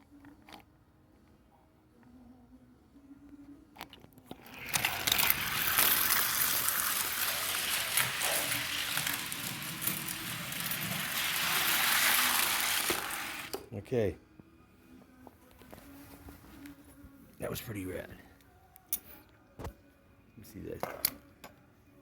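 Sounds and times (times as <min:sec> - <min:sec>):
toy cars rattling down plastic track: 0:04.4 - 0:13.6.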